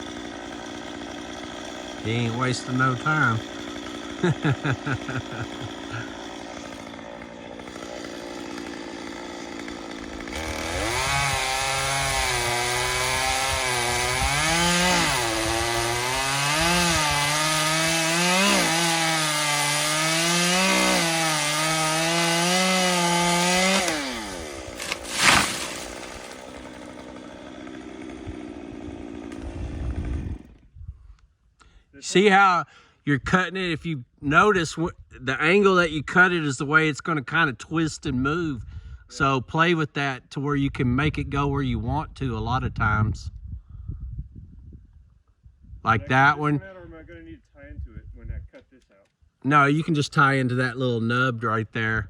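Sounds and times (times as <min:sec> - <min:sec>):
chainsaw cutting wood: 0:00.0 - 0:30.7.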